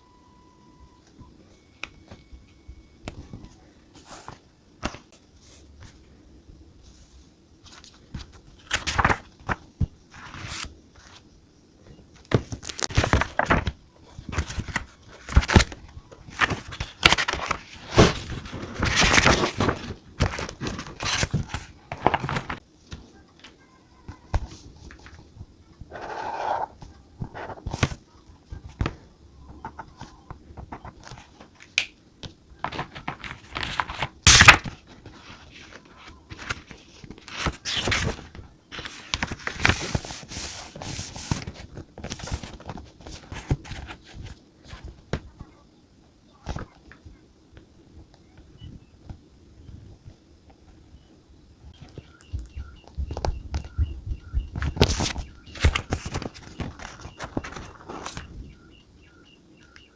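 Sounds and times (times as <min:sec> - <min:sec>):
paper rustling: 0:07.6 - 0:11.3, 0:12.3 - 0:23.0, 0:32.6 - 0:45.0, 0:54.6 - 0:58.4.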